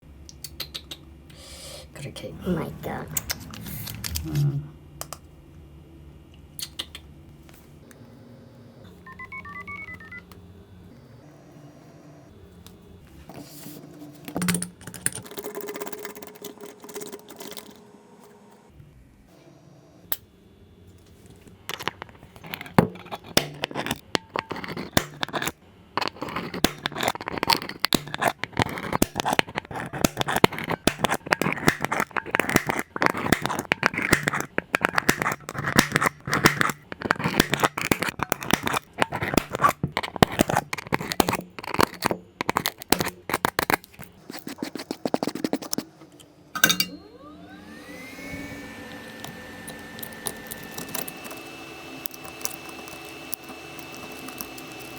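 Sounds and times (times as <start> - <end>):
hum with rising tone: 2.3 - 6.5
glass crunching and scratching: 21.8 - 45.8, 49.2 - 54.9.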